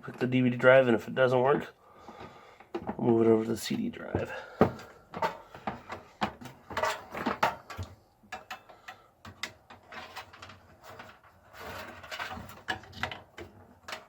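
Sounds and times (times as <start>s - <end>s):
scraping rustle of cables: 9.7s - 14.0s.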